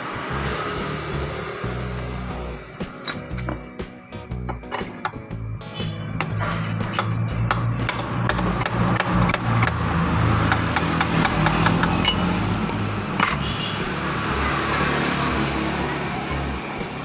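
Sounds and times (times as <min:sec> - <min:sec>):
background music: 0:00.0 - 0:17.0
metal tools tapping on parts: 0:02.8 - 0:14.0, 0:15.8 - 0:17.0.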